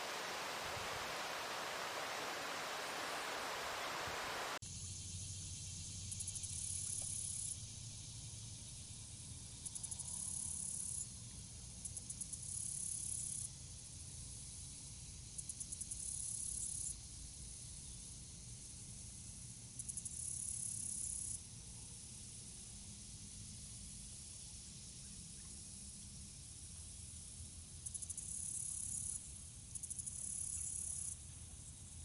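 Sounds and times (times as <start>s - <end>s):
faint low hum: 0.0s - 4.6s
steady rushing noise: 0.0s - 4.6s
insects buzzing: 0.0s - 8.8s.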